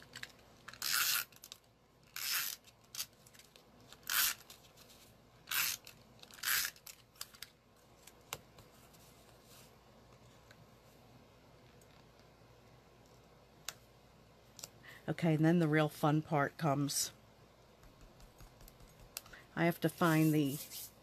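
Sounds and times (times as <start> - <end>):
faint room hiss: 0.0 - 21.0
paper scraping strokes: 19.9 - 21.0.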